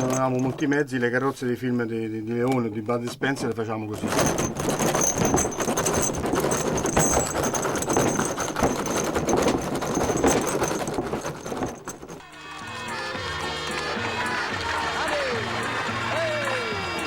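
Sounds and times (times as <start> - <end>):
rattling knocks: 0.0 - 0.8, 3.0 - 12.2
hooves clip-clopping: 4.0 - 17.0.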